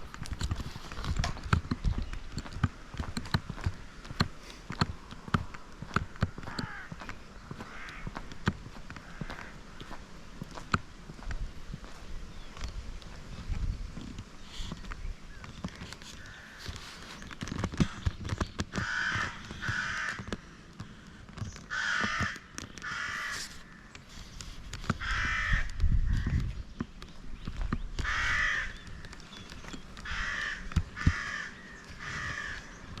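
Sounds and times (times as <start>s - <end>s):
crow cawing: 5.9s - 10.0s, 16.2s - 16.8s, 18.7s - 20.9s, 21.7s - 23.9s, 25.0s - 26.4s, 28.0s - 29.2s, 30.0s - 32.8s.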